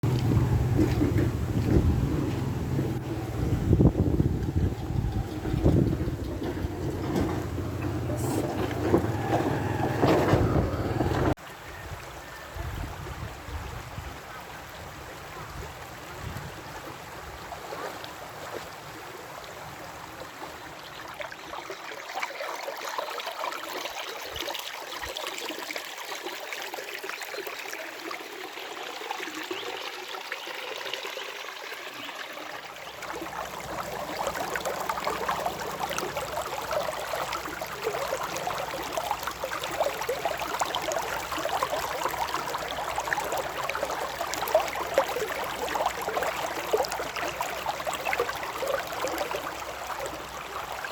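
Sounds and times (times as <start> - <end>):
stream water trickling: 0.0 - 50.9.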